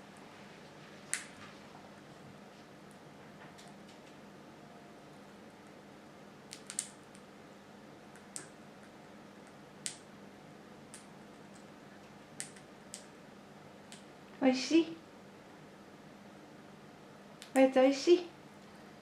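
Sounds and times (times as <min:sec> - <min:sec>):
parrot cracking seed clicks: 0:06.5 - 0:07.3, 0:08.1 - 0:10.1, 0:12.4 - 0:13.1.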